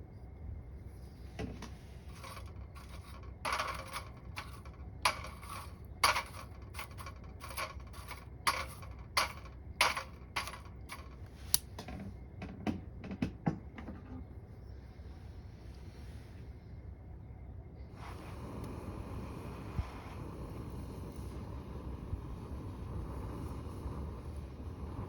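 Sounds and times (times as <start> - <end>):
firewood crackling and popping: 1.6 - 11.8.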